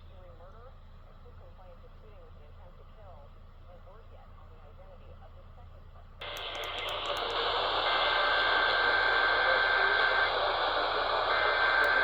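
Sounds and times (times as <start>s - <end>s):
radio static hiss: 6.2s - 12.0s.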